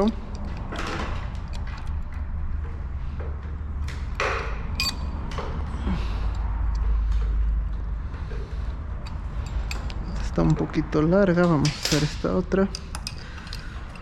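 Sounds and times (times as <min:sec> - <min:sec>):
steady low hum: 0:00.0 - 0:14.0
small metallic clicks and scrapes: 0:11.6 - 0:14.0.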